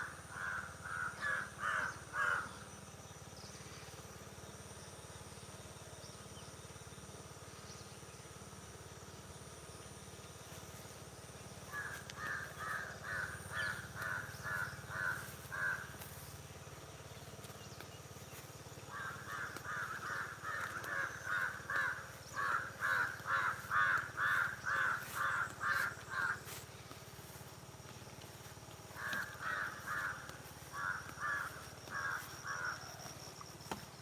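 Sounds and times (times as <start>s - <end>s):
crow cawing: 0.0s - 2.6s, 11.7s - 16.3s, 18.3s - 33.8s.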